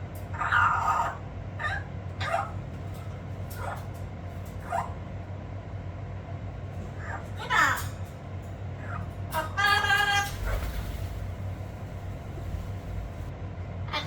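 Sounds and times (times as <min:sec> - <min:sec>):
steady low hum: 0:00.0 - 0:14.0
parrot calling: 0:00.2 - 0:02.7, 0:08.8 - 0:13.3.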